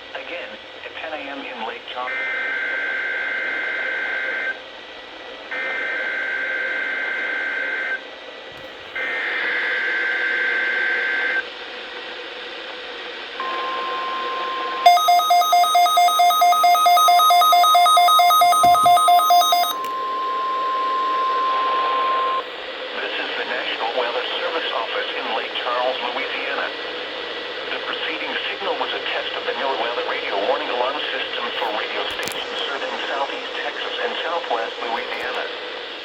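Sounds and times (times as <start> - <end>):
faint radio hiss: 0.0 - 2.2, 8.6 - 36.0
electronic alarm beeping: 13.4 - 22.5
steady alarm tone: 13.4 - 22.5.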